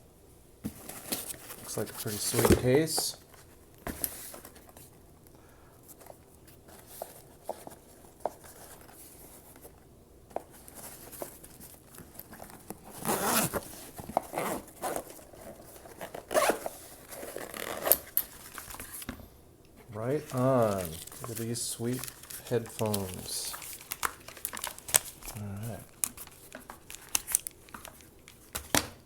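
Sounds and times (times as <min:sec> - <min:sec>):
zipper rasping open: 0:12.9 - 0:13.6, 0:14.3 - 0:15.1, 0:16.0 - 0:18.0.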